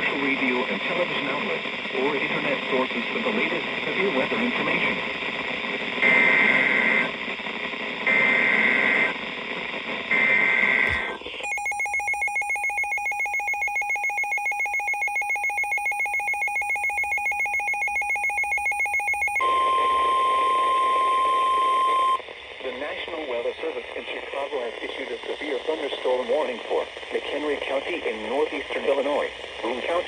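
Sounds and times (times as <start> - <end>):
steady attention tone: 10.9 - 22.2.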